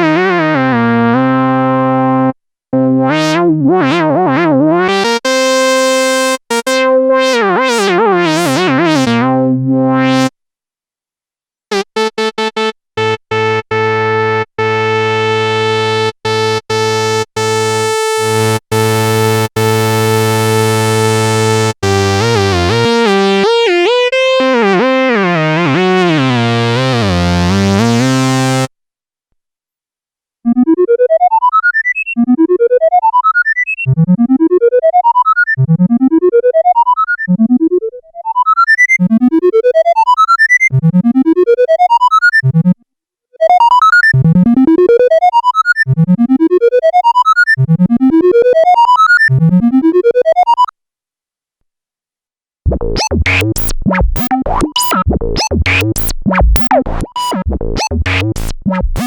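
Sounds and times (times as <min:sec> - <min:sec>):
buzzy synthesizer tone: 0:16.9 - 0:28.7, 0:52.7 - 0:59.0
warbling synthesizer pitch: 0:52.7 - 0:58.2.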